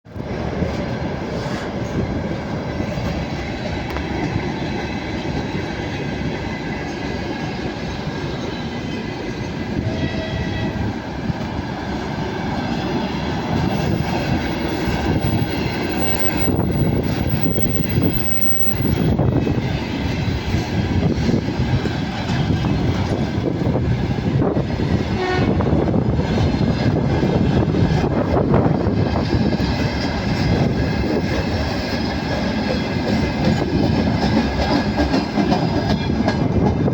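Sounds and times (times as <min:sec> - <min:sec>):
freight train wheels clattering: 0:11.1 - 0:25.1, 0:26.0 - 0:36.9.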